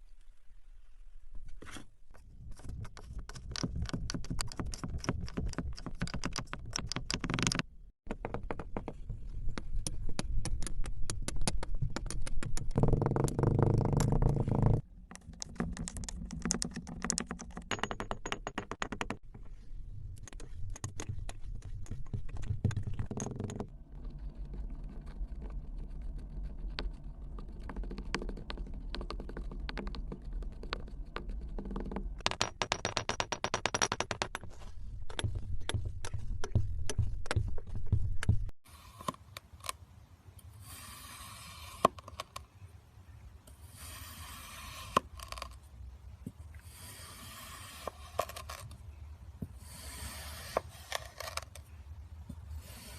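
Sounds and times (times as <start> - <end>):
soft hissing: 38.7 - 52.9.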